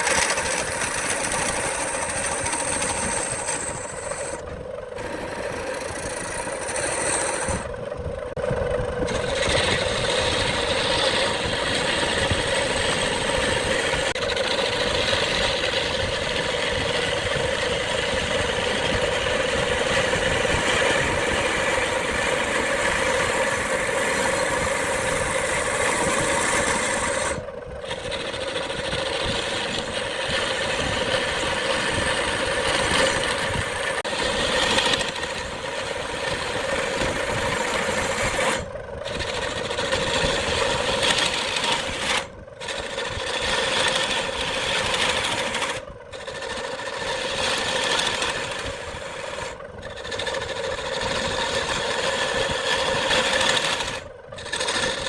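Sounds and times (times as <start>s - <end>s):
wood lathe running: 0.0s - 55.0s.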